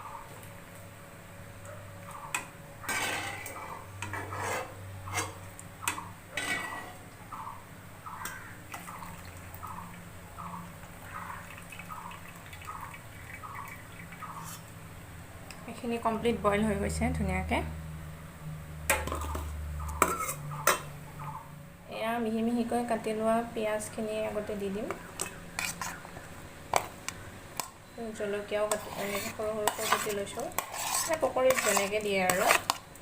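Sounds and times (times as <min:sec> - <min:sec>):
water splashing and dripping: 0:10.8 - 0:14.4.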